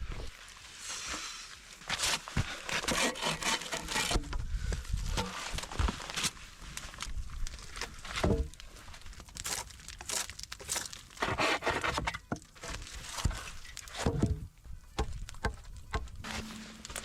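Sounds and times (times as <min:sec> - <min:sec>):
rustling and crunching: 0:00.0 - 0:17.0
wood knocking on wood: 0:15.0 - 0:16.2.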